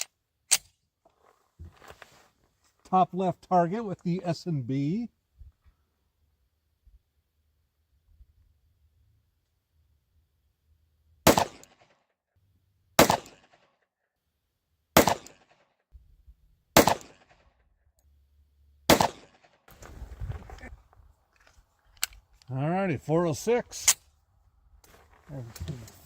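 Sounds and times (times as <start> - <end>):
handling rustle: 1.0 - 2.8, 24.8 - 26.0
pistol shots: 11.2 - 11.9, 13.0 - 13.6, 15.0 - 15.5, 16.8 - 17.4, 18.9 - 19.6.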